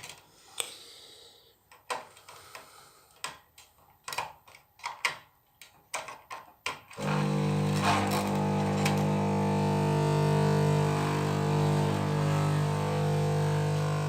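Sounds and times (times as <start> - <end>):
ballast low buzz: 8.4 - 14.0.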